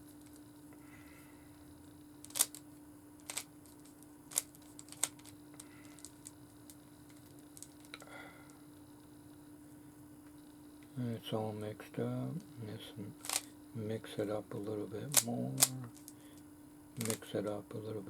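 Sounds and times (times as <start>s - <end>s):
steady low hum: 0.0s - 18.0s
puzzle cube clicking: 2.3s - 2.6s, 3.2s - 5.3s, 13.2s - 13.5s, 15.1s - 16.1s.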